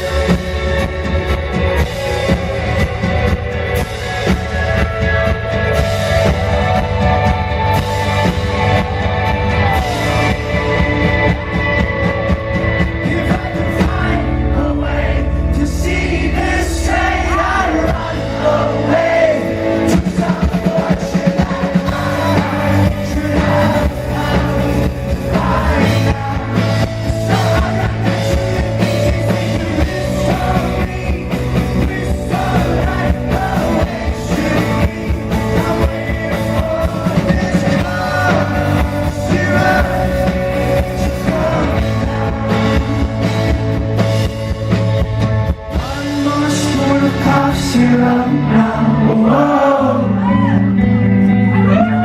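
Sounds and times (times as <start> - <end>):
rock band playing live: 0.0 - 52.0
man singing: 12.8 - 43.8, 45.7 - 52.0.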